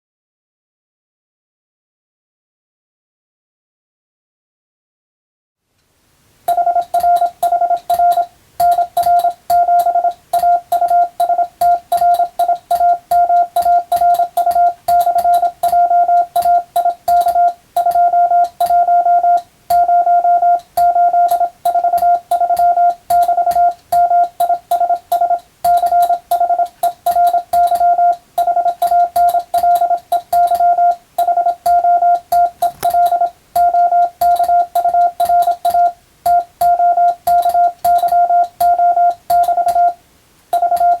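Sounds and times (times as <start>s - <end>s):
morse code tone: 6.5s - 40.0s, 40.6s - 41.0s
key clicks: 32.2s - 35.9s.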